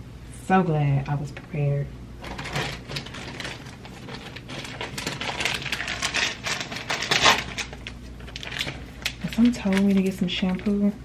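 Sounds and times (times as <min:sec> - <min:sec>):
small items rummaged through: 0:02.2 - 0:11.0.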